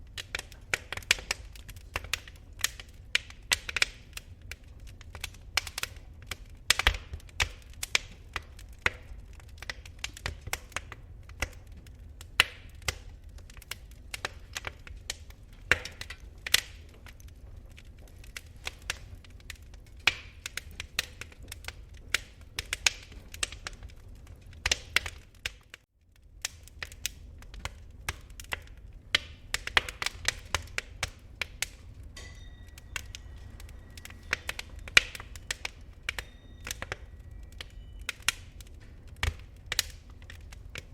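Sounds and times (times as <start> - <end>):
fire crackling and popping: 0.0 - 40.9
low rumble: 31.0 - 39.6.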